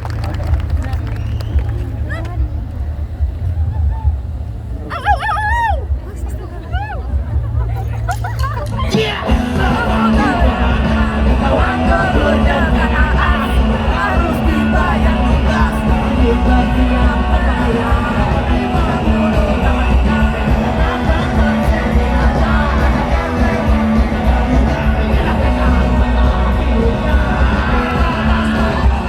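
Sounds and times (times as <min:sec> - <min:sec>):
voices singing and yelling: 0:03.8 - 0:29.0
live rock band playing: 0:08.4 - 0:29.0.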